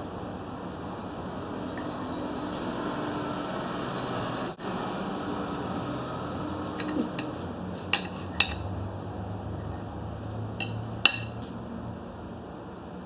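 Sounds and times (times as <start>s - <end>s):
knife clinking against plate: 6.8s - 8.7s, 10.6s - 11.4s.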